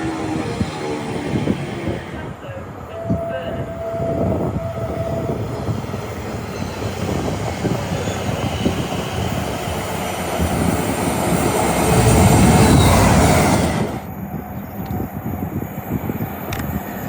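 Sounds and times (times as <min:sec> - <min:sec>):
train passing at speed: 0:00.0 - 0:17.0.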